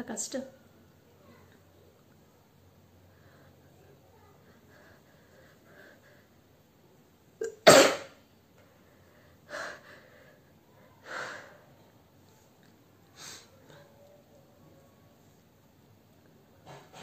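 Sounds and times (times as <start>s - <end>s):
woman sneezing: 7.4s - 8.1s.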